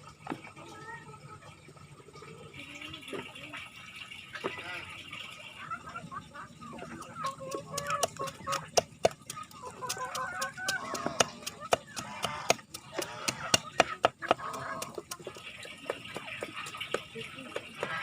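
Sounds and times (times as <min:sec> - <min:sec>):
chickens clucking: 0:00.4 - 0:18.0
sharp taps and clicks: 0:07.0 - 0:17.9.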